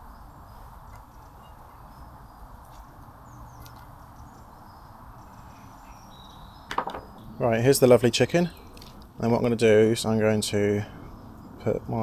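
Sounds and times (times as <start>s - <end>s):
faint bird chirps: 0.0s - 8.9s
outdoor background hiss: 0.0s - 12.0s.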